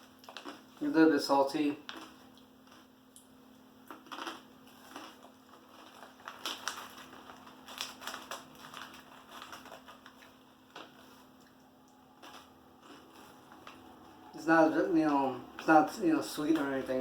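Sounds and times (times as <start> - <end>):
chewing crunchy snacks: 0.0 - 0.9, 1.8 - 14.3.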